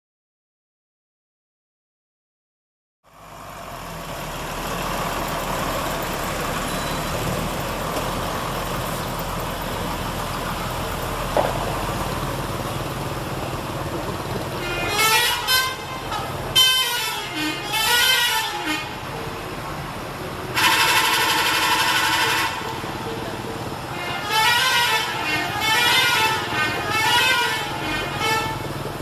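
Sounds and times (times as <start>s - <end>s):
bus engine running: 3.1s - 29.0s
musical bus horn: 14.0s - 19.5s, 20.3s - 29.0s.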